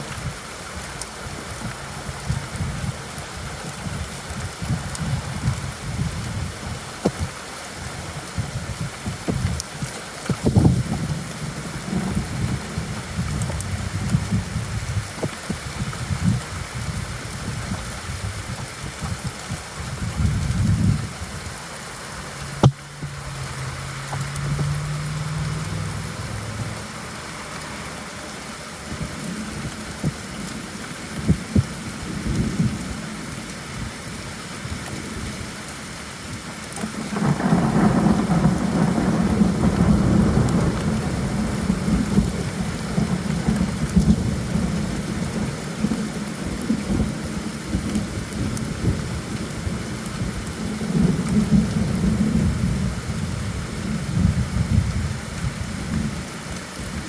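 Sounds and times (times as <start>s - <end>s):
steady rain falling: 0.0s - 57.0s
thunder rumbling: 10.3s - 21.5s, 36.8s - 56.2s.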